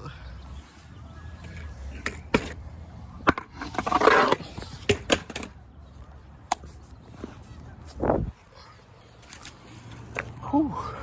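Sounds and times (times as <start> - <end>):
skateboard scraping slide: 0.6 - 5.1.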